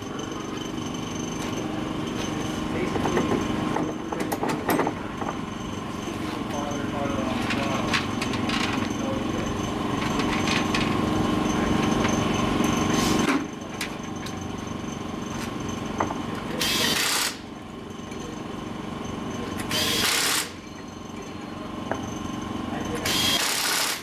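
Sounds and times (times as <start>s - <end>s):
small motor running: 14.1s - 24.0s.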